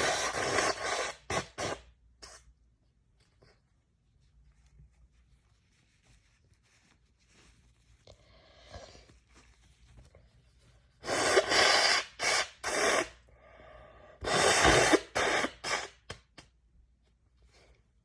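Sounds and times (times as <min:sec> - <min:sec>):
woman blowing her nose: 0:00.0 - 0:02.5, 0:11.0 - 0:13.3, 0:14.2 - 0:16.3.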